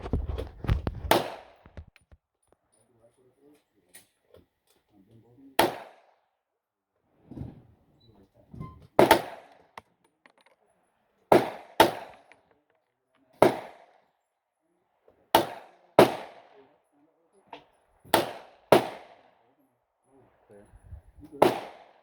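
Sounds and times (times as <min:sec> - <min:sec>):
gunshots with echo: 0:05.6 - 0:06.0, 0:11.3 - 0:12.3, 0:13.4 - 0:13.9, 0:15.4 - 0:16.6, 0:18.1 - 0:19.3, 0:21.4 - 0:22.0.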